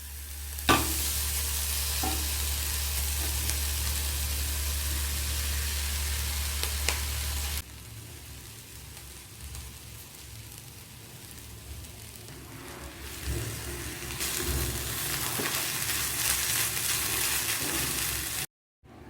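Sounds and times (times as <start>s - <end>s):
food sizzling in oil: 0.0s - 18.5s.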